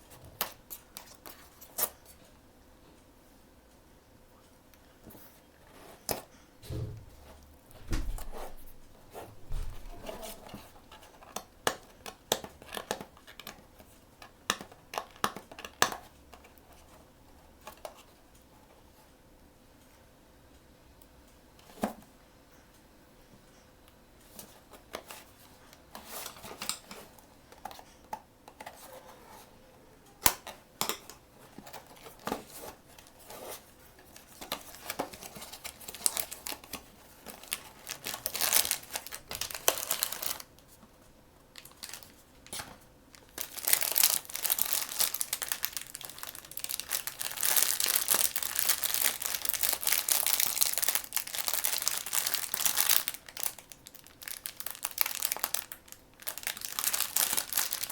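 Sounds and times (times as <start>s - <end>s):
packaging clicks and rustles: 9.6s - 18.1s, 30.1s - 57.9s
wrapping crinkling: 31.4s - 40.9s, 41.5s - 57.9s.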